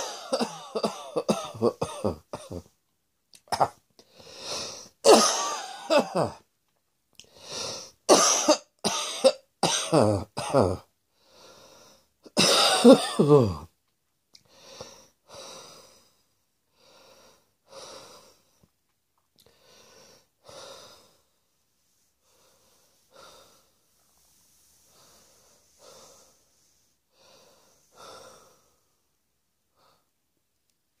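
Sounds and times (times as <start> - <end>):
person breathing: 4.0 - 5.0, 7.2 - 8.0, 11.1 - 12.2, 14.4 - 18.7, 19.4 - 30.2.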